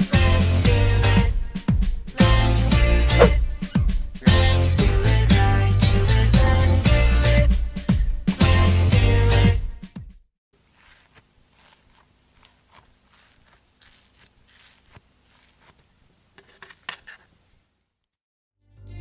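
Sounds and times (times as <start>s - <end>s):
small objects clicking and rustling: 10.7s - 17.3s.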